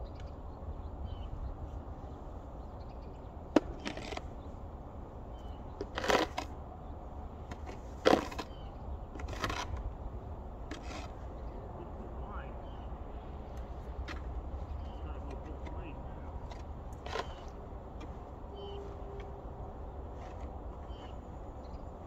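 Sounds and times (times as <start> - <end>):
sharp cracking strokes: 5.8 - 6.5.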